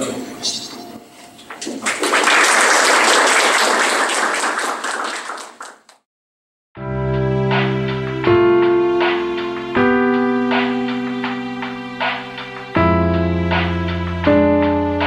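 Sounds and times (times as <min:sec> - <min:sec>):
audience applauding: 0:01.6 - 0:06.0
piano-like keyboard music: 0:06.8 - 0:15.0.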